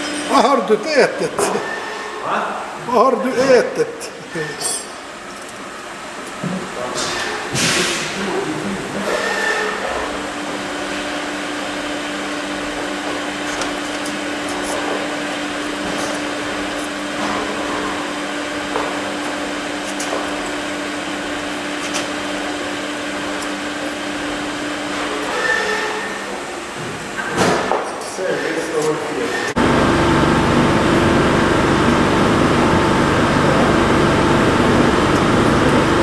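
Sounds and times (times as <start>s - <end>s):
valve grinder motor hum: 29.6s - 36.0s.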